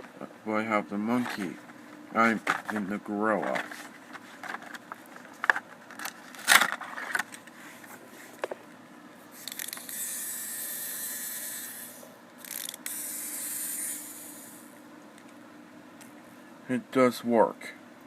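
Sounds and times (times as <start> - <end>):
wind-up toy clockwork whirring: 9.4 - 14.7.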